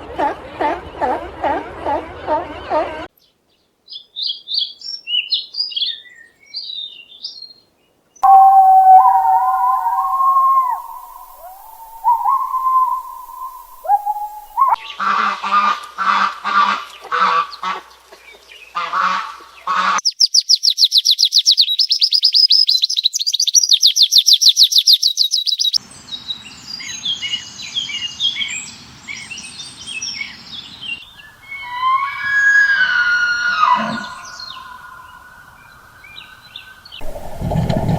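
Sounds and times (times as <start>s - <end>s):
high-pitched bird trill: 8.2s - 14.8s
light bird chirping: 8.2s - 14.9s
bird honking calls: 8.2s - 15.6s.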